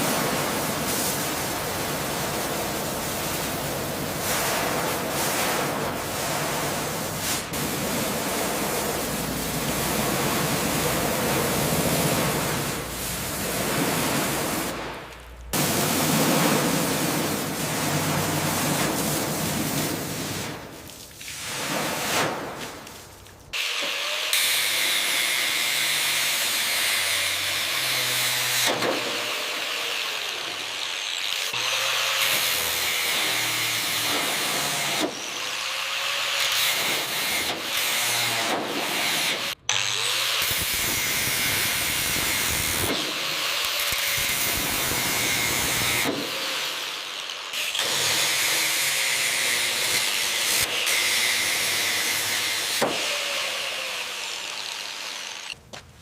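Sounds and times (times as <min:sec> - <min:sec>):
power tool grinding: 0:23.5 - 0:55.6.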